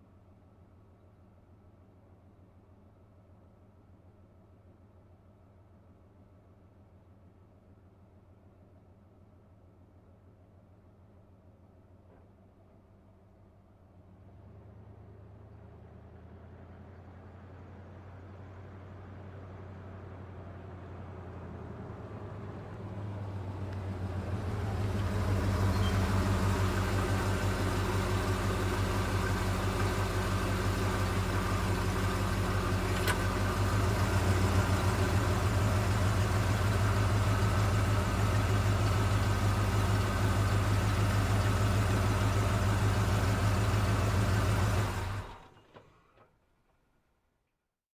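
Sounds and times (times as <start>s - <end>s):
engine shutting off: 20.0s - 46.4s
truck engine idling: 21.8s - 46.0s.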